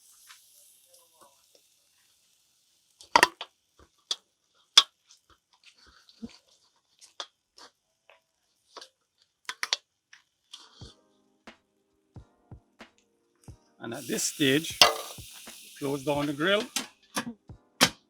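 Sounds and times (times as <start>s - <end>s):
tongs clicking against grill and pan: 14.0s - 16.9s.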